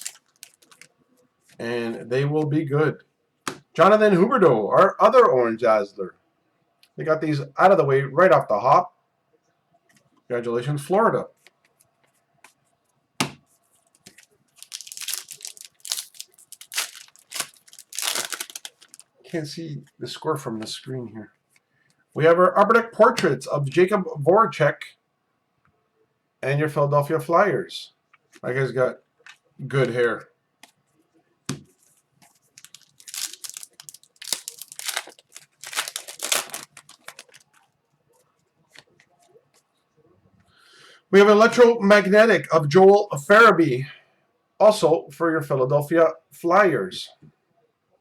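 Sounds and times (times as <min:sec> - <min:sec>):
foil wrapper crinkling and tearing: 0:00.0 - 0:00.9, 0:14.1 - 0:19.0, 0:32.6 - 0:37.7.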